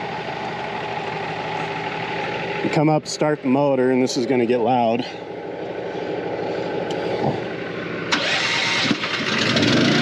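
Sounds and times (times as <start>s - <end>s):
small gasoline motor running: 5.0s - 10.0s.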